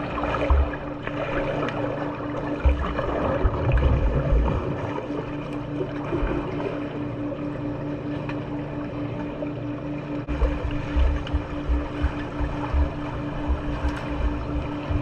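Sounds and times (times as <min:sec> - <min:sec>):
pool water sloshing and splashing: 0:00.0 - 0:15.0
pulsing hum: 0:00.0 - 0:15.0
low thumps: 0:10.3 - 0:15.0.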